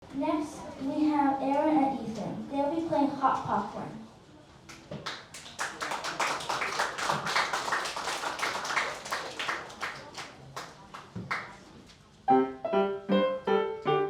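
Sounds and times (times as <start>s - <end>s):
audience applauding: 5.0s - 11.6s.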